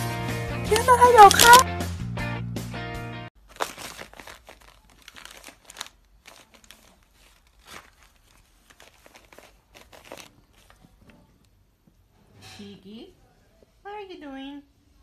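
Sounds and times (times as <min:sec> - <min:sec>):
plastic packaging rustling: 0:00.7 - 0:01.6, 0:03.4 - 0:11.2.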